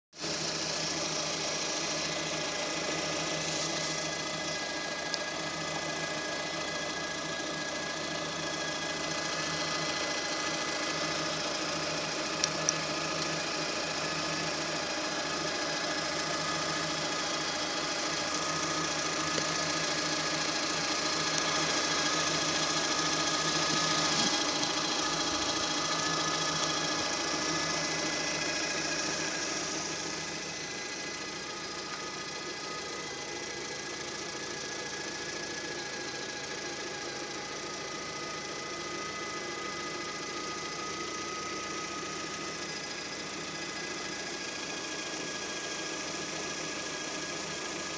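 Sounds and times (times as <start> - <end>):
car engine idling: 0.2 - 47.9.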